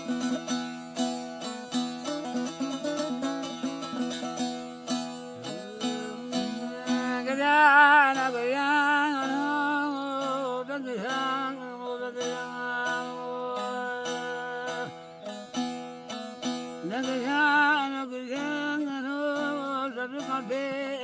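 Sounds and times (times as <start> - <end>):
plucked string instrument: 0.0 - 21.0.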